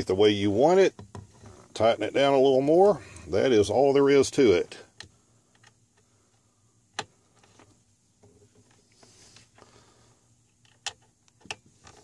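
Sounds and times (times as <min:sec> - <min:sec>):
handling small parts: 0:06.9 - 0:09.7.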